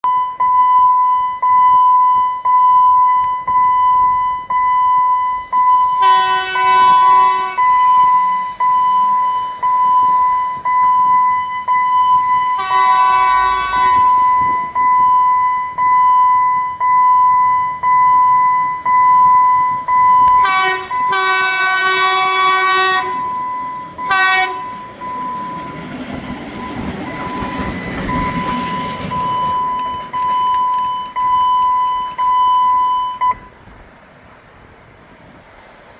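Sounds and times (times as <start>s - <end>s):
crossing signal beeping: 0.0s - 33.7s
passing train rumble: 3.7s - 16.6s, 17.6s - 35.9s
train horn blasts: 6.0s - 8.0s, 12.5s - 14.6s, 20.4s - 23.4s, 24.0s - 24.8s.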